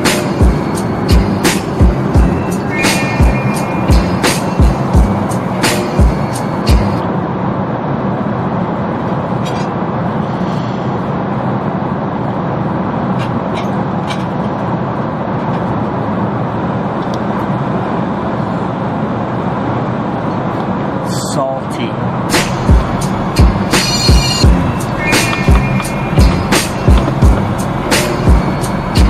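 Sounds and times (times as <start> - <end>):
low hum: 0.0 - 11.1
airliner cabin roar: 0.0 - 29.0.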